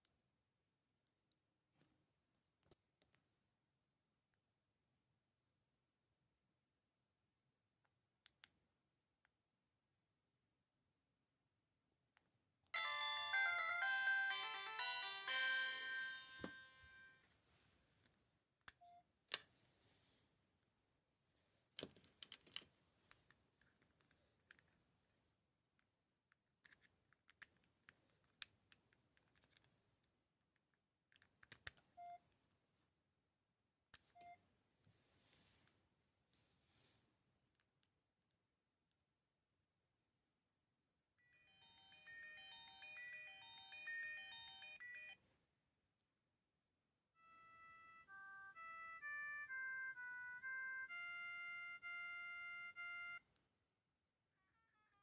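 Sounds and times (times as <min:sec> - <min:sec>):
smartwatch electronic chime jingle: 0:12.8 - 0:17.2, 0:41.3 - 0:45.2.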